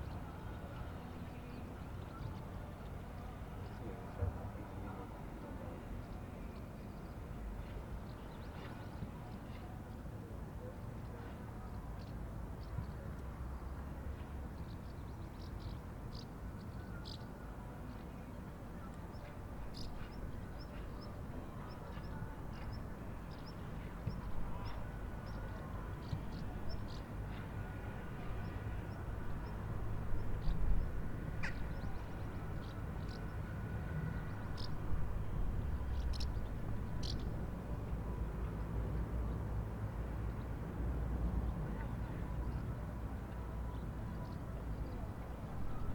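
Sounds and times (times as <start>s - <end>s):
small birds chirping: 35.9s - 37.3s.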